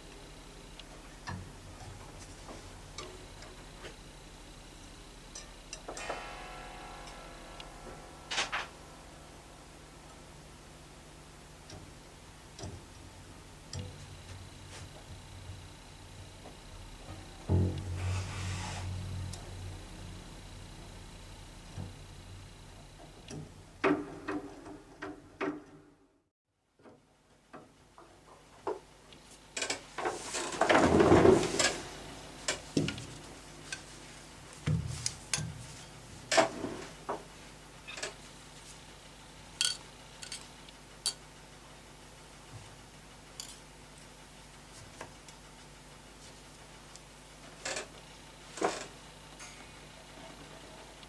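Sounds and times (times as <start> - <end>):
scraping rustle: 17.8 - 19.3, 30.0 - 37.0
small parts and tools clicking: 39.6 - 41.2, 43.4 - 43.7.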